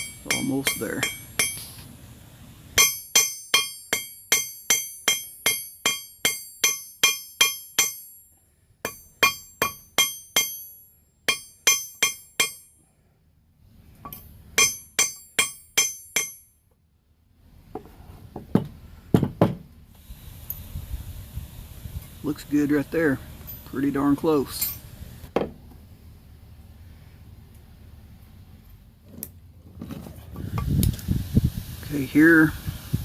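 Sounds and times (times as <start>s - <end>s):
hammer striking nail on anvil: 0.0s - 1.8s, 2.8s - 8.2s, 8.8s - 12.8s, 14.1s - 16.5s.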